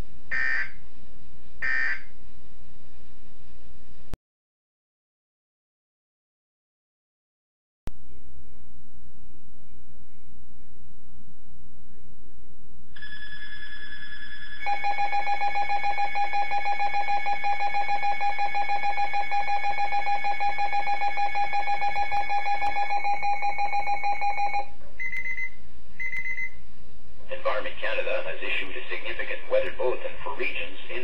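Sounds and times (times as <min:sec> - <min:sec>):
steady high tone: 0:13.0 - 0:25.3
short beeps: 0:14.7 - 0:26.6.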